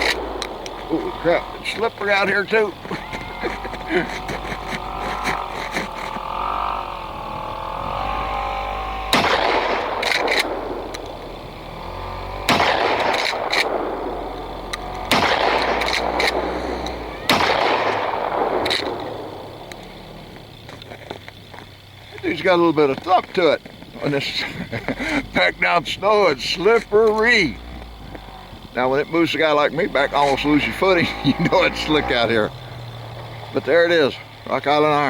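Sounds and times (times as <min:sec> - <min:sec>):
shotgun shots echoing: 0:09.1 - 0:10.8, 0:12.5 - 0:14.2, 0:15.1 - 0:16.5, 0:17.3 - 0:19.1.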